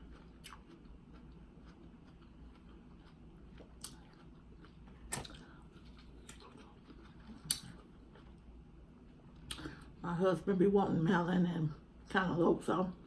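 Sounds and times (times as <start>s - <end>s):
quiet chewing: 0.0s - 10.0s.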